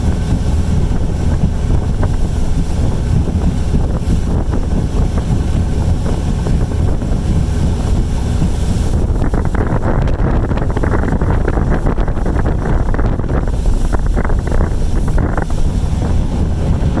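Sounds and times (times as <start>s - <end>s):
strong wind buffeting microphone: 0.0s - 17.0s.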